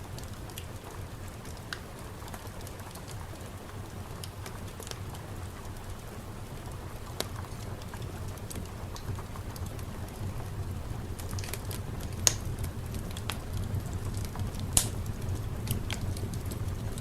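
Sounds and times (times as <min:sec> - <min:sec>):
fireplace crackling: 0:00.0 - 0:17.0
steady low rumble: 0:00.0 - 0:17.0
sharp fire pops: 0:03.8 - 0:17.0.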